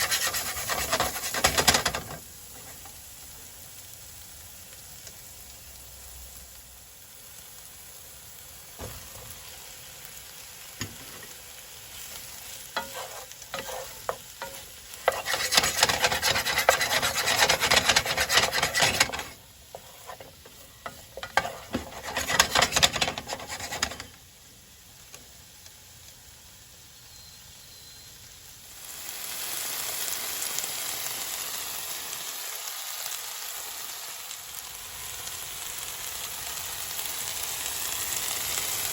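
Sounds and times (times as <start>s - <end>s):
utensil knocking on pan: 0.0s - 2.2s, 12.8s - 24.1s
scraping and stirring in pan: 0.0s - 3.0s, 10.8s - 24.2s
frying sizzle: 0.0s - 38.9s.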